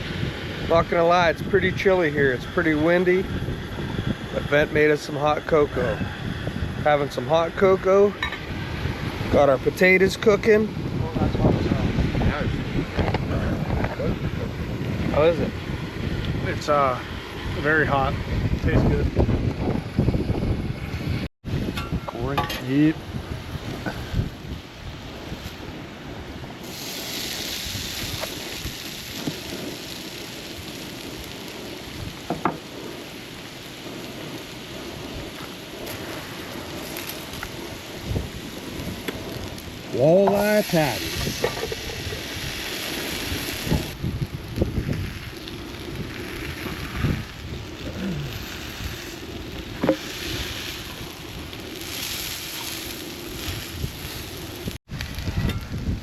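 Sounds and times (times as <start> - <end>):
wind rumbling on microphone: 0.0 - 56.0
food sizzling in a pan: 26.6 - 55.4
fish cakes sizzling in a pan: 26.7 - 33.8, 48.0 - 54.8.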